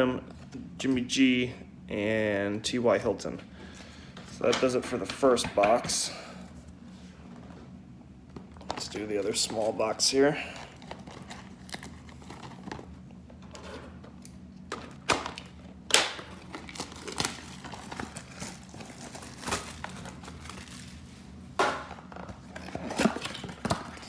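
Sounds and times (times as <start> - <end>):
plastic wrap crinkling: 8.6 - 13.0, 14.8 - 21.4.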